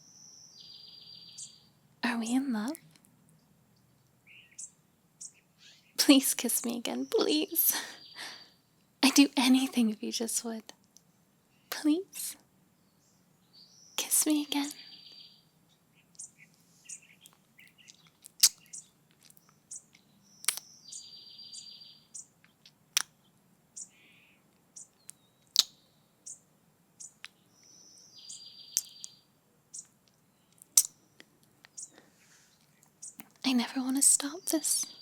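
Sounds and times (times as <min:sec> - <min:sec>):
birds chirping: 0:00.0 - 0:35.0
kissing lip smacks: 0:17.9 - 0:19.4, 0:20.4 - 0:20.7, 0:22.6 - 0:23.2, 0:25.5 - 0:25.7, 0:30.7 - 0:31.0.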